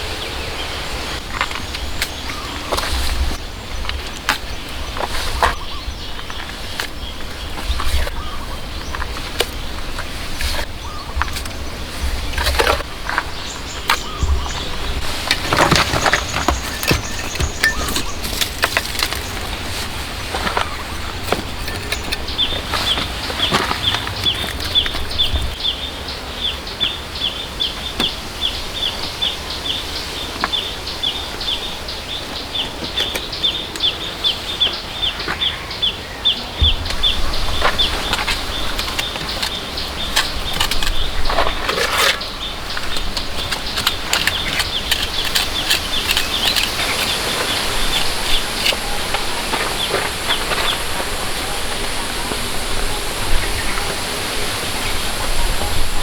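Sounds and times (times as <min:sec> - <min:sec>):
bird chirping: 0:00.0 - 0:10.0, 0:10.8 - 0:56.0
rustling scrape: 0:11.3 - 0:25.6, 0:36.6 - 0:56.0.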